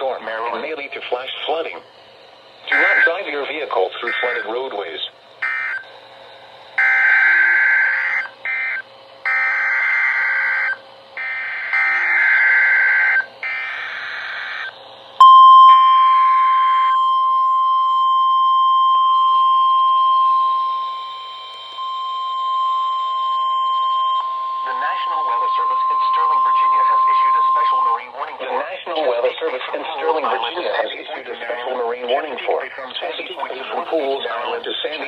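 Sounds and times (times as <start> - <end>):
harsh buzzing data bursts: 0.0 - 17.9, 19.2 - 29.0
steady warning alarm tone: 0.0 - 28.5.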